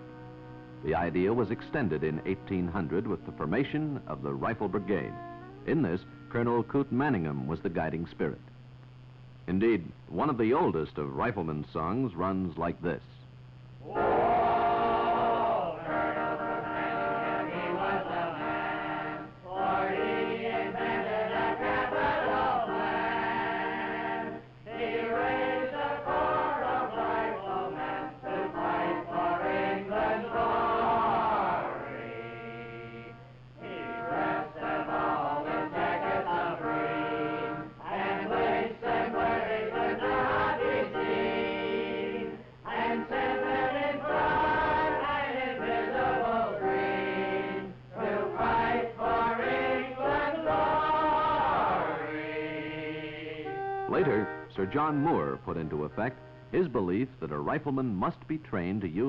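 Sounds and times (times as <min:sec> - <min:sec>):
choir singing: 0:13.8 - 0:55.2.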